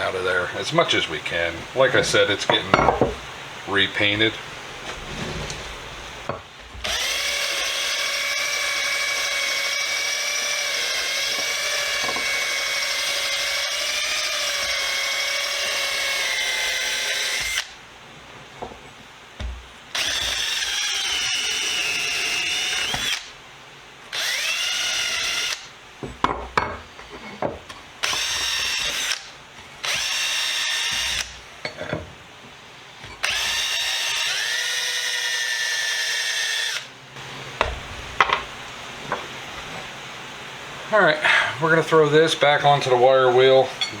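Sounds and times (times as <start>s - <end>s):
power drill running: 5.0s - 17.8s, 19.9s - 23.3s, 24.1s - 25.7s, 28.0s - 31.4s, 33.2s - 36.9s.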